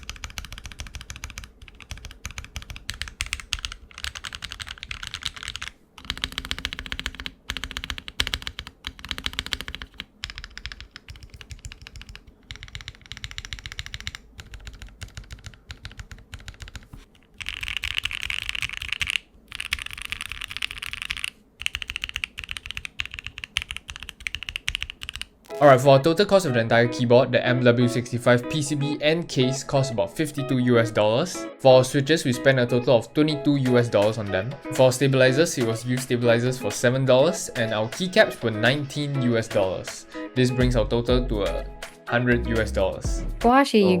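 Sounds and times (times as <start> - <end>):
mechanical keyboard typing: 0.0 - 25.6.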